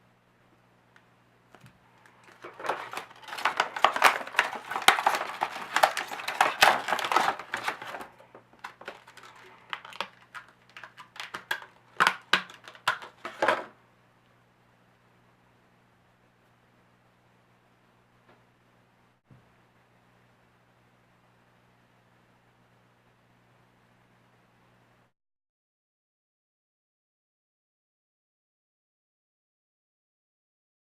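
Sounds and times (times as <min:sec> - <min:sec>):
packaging crinkling: 0:02.0 - 0:13.7.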